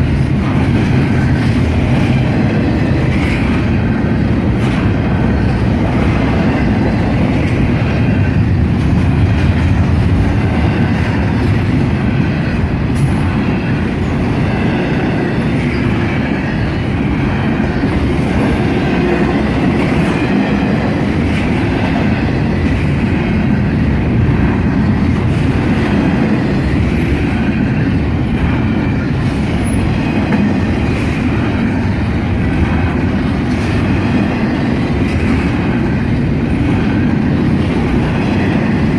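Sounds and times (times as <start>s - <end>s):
train wheels rumbling on rail: 0.0s - 38.9s.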